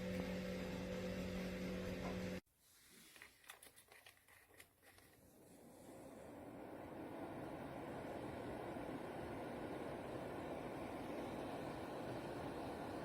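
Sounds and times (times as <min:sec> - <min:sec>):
fan heater humming: 0:00.0 - 0:02.4, 0:05.2 - 0:13.0.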